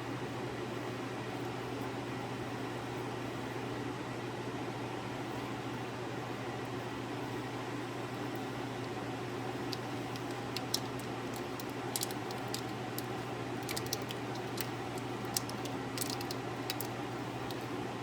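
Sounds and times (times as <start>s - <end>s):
fan-like mechanical hum: 0.0s - 18.0s
small parts clicking: 9.7s - 17.6s.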